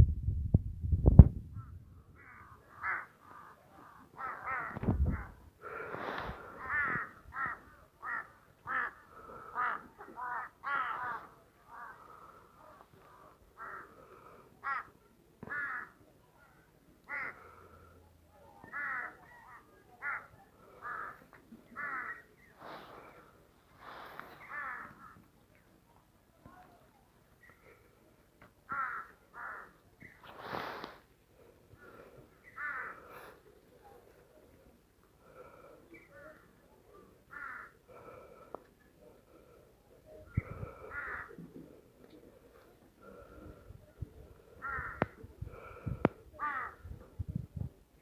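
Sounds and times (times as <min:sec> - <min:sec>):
low thump: 0:00.0 - 0:01.8
crows cawing: 0:02.2 - 0:04.8, 0:06.6 - 0:12.3, 0:13.6 - 0:14.0, 0:14.6 - 0:16.0, 0:17.1 - 0:17.5, 0:18.7 - 0:19.2, 0:20.0 - 0:21.2, 0:21.8 - 0:22.2, 0:24.4 - 0:25.2, 0:28.7 - 0:29.8, 0:32.5 - 0:33.0, 0:37.3 - 0:38.1, 0:40.7 - 0:41.4, 0:44.6 - 0:45.8, 0:46.4 - 0:46.8.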